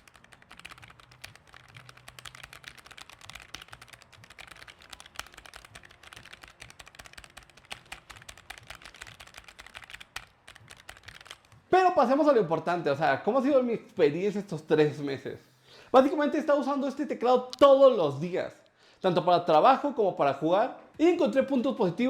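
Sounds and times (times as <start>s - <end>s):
fast mechanical keyboard typing: 0.0s - 12.3s.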